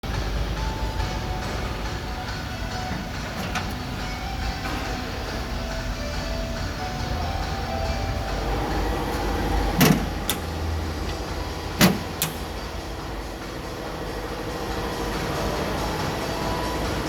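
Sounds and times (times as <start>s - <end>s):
sharp clunks: 9.7s - 12.5s.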